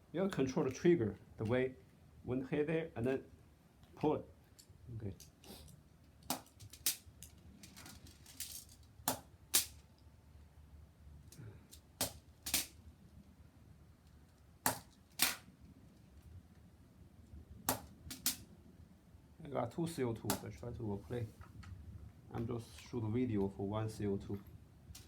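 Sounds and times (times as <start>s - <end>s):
air pistol sharp cracks: 6.2s - 7.1s, 9.1s - 9.8s, 12.0s - 12.8s, 14.6s - 15.5s, 17.7s - 18.4s.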